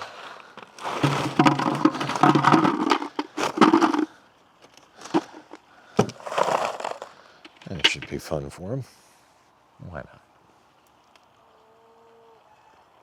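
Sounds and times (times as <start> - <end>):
knocking and clicking: 1.0 - 4.1.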